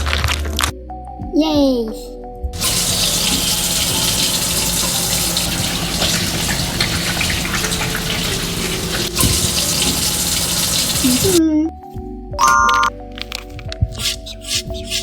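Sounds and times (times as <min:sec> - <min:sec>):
tap water running into sink: 0:02.6 - 0:11.4.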